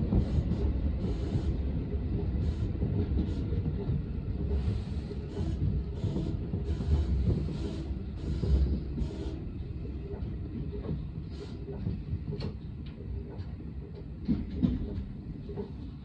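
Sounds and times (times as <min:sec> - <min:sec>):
train wheels rumbling on rails: 0:00.0 - 0:16.0.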